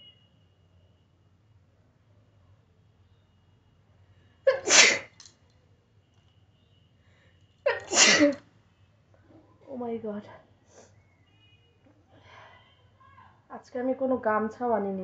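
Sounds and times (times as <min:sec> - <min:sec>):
woman sneezing: 0:04.5 - 0:05.2, 0:07.7 - 0:08.4.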